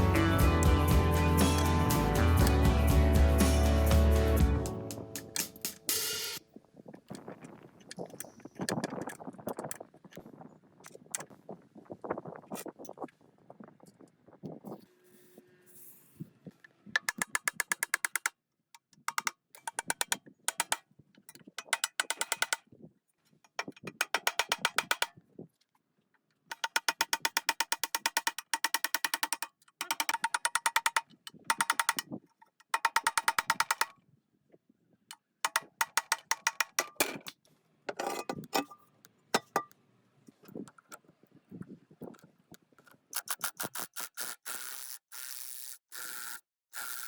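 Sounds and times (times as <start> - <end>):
rapid mechanical clicking: 26.5 - 32.1.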